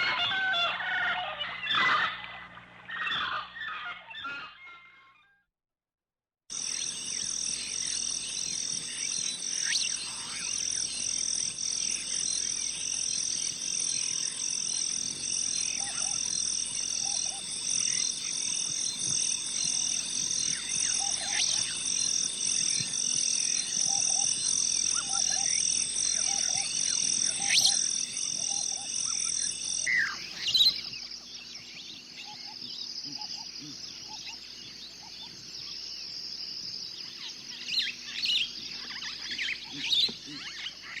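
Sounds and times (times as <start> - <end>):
high-pitched pulsing animal chorus: 6.5 - 35.4, 37.1 - 41.0
bird chirps: 6.5 - 41.0.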